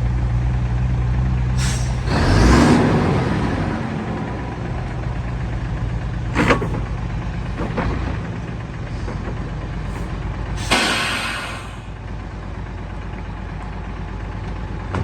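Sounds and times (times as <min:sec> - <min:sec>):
diesel engine idling: 0:00.0 - 0:15.0
air brake hiss: 0:01.6 - 0:02.1, 0:09.9 - 0:12.0.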